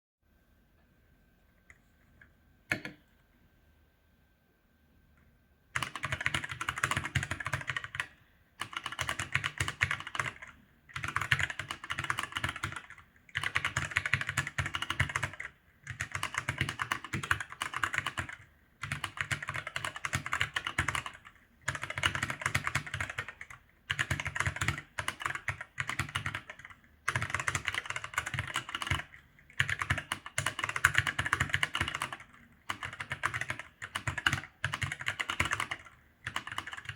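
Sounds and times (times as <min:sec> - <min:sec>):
fast mechanical keyboard typing: 0:05.8 - 0:36.9.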